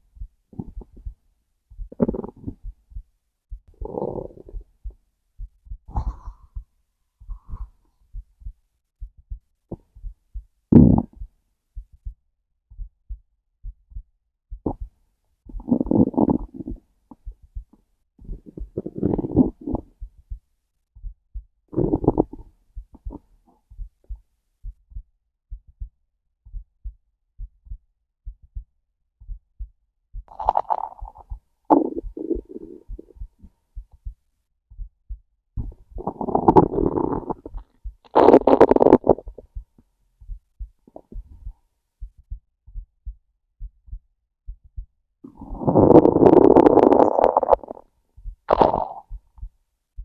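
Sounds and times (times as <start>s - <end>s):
heartbeat thumping: 0.0s - 30.3s, 31.0s - 50.0s
stomach gurgling and growling: 0.5s - 1.1s, 1.8s - 2.8s, 3.7s - 5.0s, 5.9s - 6.6s, 10.7s - 11.2s, 15.5s - 17.3s, 18.2s - 20.1s, 21.7s - 23.3s, 30.3s - 33.5s, 35.6s - 39.6s, 40.9s - 41.5s, 45.2s - 47.9s, 48.5s - 49.5s.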